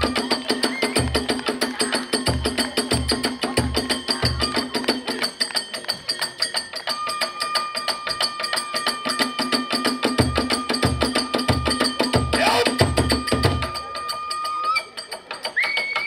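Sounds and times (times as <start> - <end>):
hand cymbals clashing: 0.0 - 16.0
drum strokes: 7.7 - 16.0
heavy low drum beats: 10.1 - 13.9.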